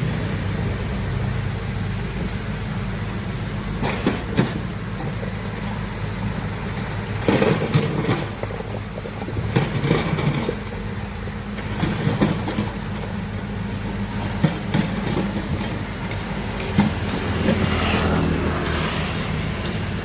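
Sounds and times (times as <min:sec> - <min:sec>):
excavator engine running: 0:00.0 - 0:20.0
machine knocks and clanks: 0:03.8 - 0:11.0, 0:11.6 - 0:20.0.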